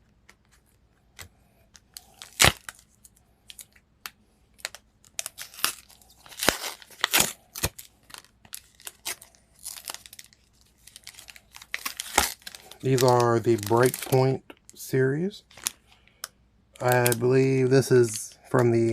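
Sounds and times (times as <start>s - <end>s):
foil wrapper crinkling and tearing: 1.9s - 3.8s, 4.6s - 15.8s, 16.8s - 18.2s.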